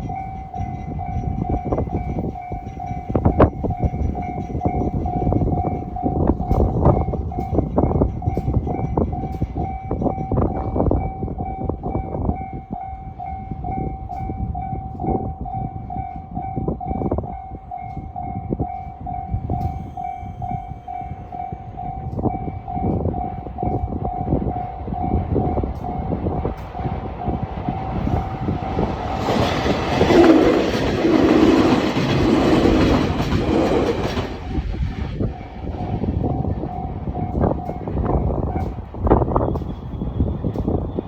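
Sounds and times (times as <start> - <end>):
train rumble: 0.0 - 41.0.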